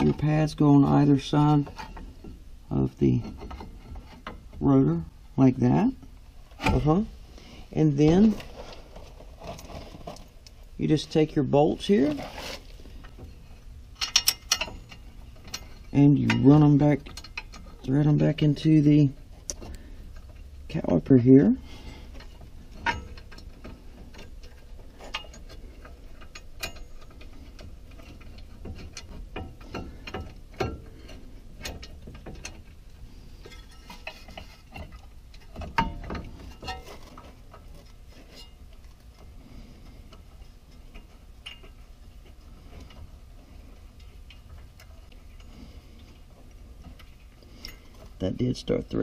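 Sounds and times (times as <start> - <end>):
metallic clicks of bolts: 14.0 - 17.6.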